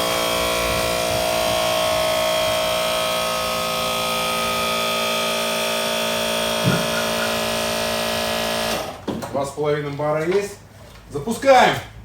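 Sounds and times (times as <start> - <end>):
electric pump whining: 0.0 - 9.1
brief knock: 6.6 - 7.5.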